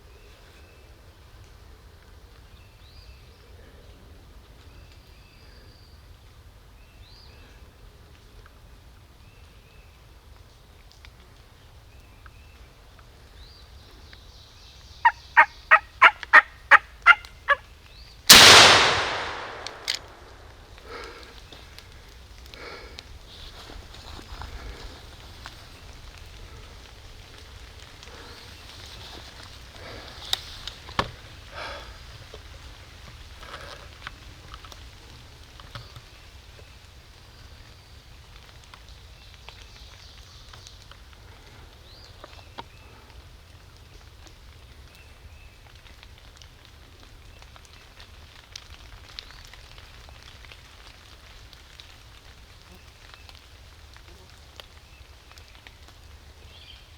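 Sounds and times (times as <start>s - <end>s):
soft steady hiss: 0.0s - 56.9s
wild turkey calling: 14.9s - 17.7s
shotgun shot with echo: 18.3s - 20.2s.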